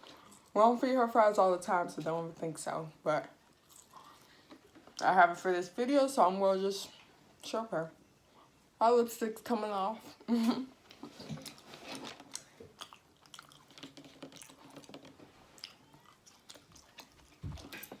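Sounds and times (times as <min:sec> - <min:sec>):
chewing with wet mouth clicks: 0:03.4 - 0:04.8, 0:11.3 - 0:18.0.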